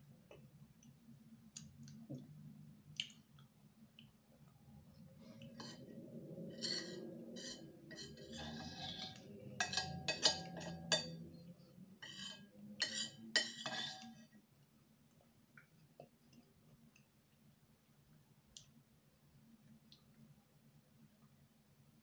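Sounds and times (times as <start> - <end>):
low steady hum: 0.0 - 22.0
glass and dishware clinking: 8.0 - 11.2.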